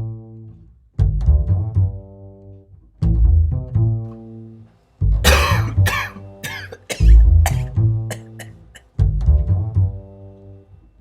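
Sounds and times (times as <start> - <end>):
low string instrument notes: 0.0 - 6.4, 7.1 - 10.8
harsh cough: 5.2 - 8.8.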